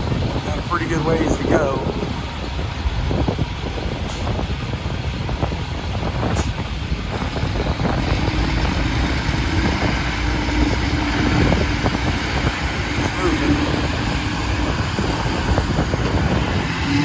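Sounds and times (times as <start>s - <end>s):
truck diesel engine rumbling: 0.0s - 17.0s
wind buffeting microphone: 0.0s - 17.0s
steady hum: 6.1s - 17.0s.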